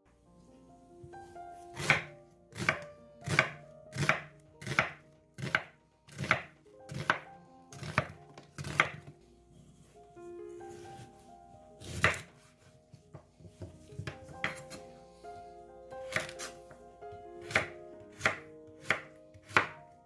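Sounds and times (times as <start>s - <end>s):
knife chopping on cutting board: 1.8s - 9.1s, 11.8s - 12.4s, 13.0s - 14.8s, 16.1s - 16.6s, 17.4s - 19.8s.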